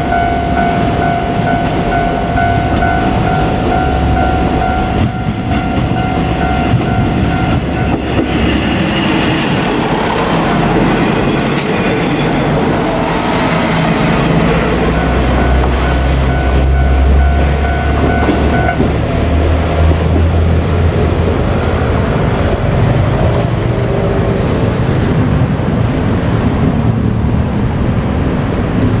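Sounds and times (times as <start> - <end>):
thin high tone ringing: 0.0 - 18.8
diesel railcar engine drone: 0.0 - 29.0
train rolling noise: 0.0 - 29.0.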